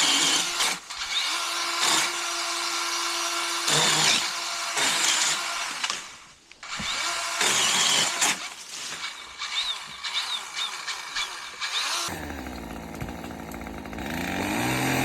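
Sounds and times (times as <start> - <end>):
electric pole saw whining: 6.6 - 15.0.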